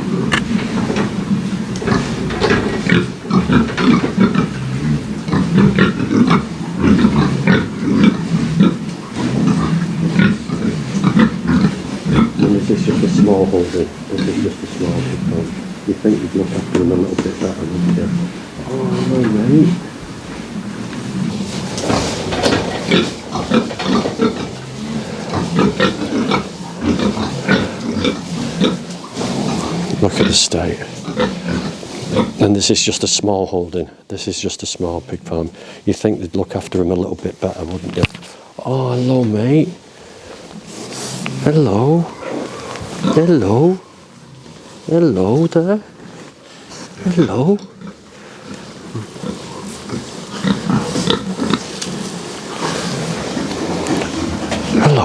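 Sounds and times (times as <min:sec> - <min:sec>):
pigs grunting: 0:00.0 - 0:34.1, 0:34.8 - 0:55.0.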